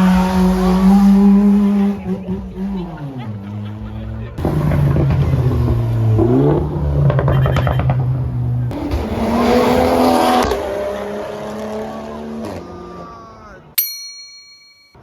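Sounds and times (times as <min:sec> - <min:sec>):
car engines revving: 0:00.0 - 0:13.8
bright ringing chime: 0:13.8 - 0:15.0.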